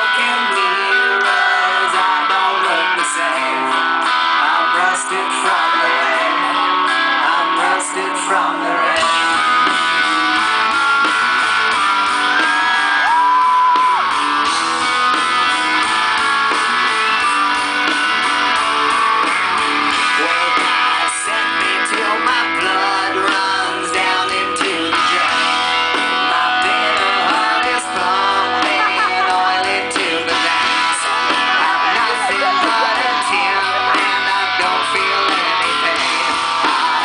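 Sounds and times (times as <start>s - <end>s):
guitar music: 0.0s - 37.0s.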